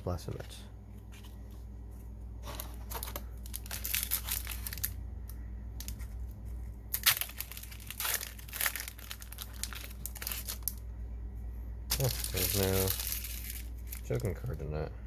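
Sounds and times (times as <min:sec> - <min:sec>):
foil wrapper tearing and crinkling: 0:02.5 - 0:05.0, 0:06.9 - 0:10.8, 0:11.9 - 0:14.4.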